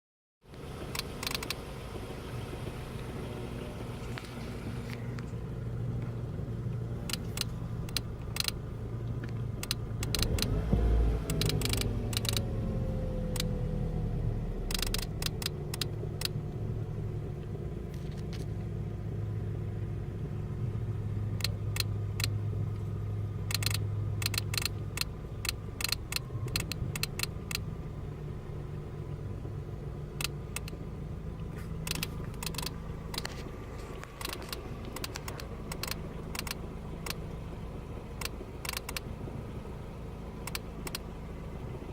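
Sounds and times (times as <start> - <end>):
car engine humming: 0.4 - 41.9
low engine surge: 0.4 - 41.9
sharp electrical ticks: 0.9 - 1.6, 7.0 - 8.6, 9.2 - 10.6, 11.2 - 12.5, 14.6 - 16.4, 21.4 - 22.8, 23.4 - 27.7, 30.1 - 30.8, 31.4 - 37.3, 38.1 - 39.2, 40.4 - 41.1.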